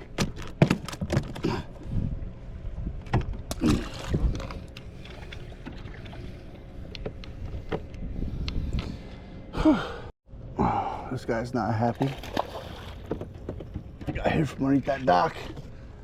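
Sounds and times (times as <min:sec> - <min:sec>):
wind rumble on microphone: 0:01.8 - 0:04.6, 0:06.9 - 0:09.2.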